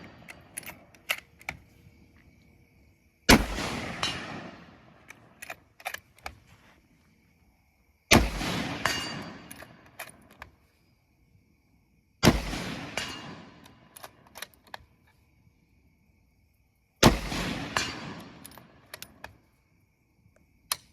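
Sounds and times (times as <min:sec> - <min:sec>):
small metallic clanks: 0:00.0 - 0:01.7.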